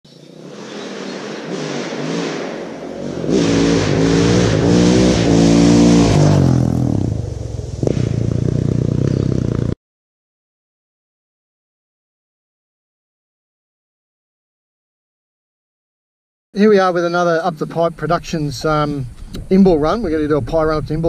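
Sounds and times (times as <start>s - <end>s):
dirt bike engine revving: 0.1s - 9.8s.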